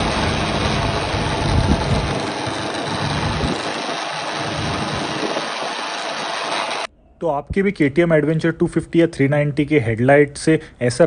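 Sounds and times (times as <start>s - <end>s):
motorcycle engine running: 0.0s - 6.9s.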